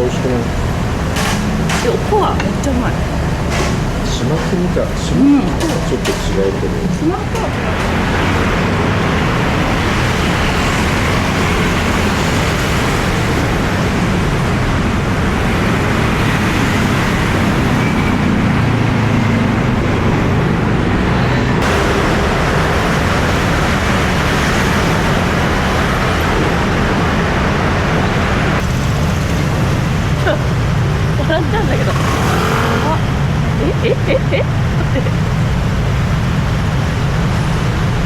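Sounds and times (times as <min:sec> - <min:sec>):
road traffic passing: 0:00.0 - 0:38.0.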